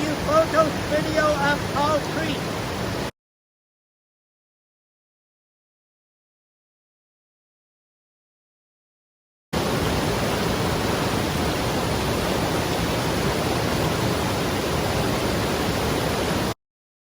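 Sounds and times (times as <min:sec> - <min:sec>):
creek water rushing: 0:00.0 - 0:03.1, 0:09.6 - 0:16.6.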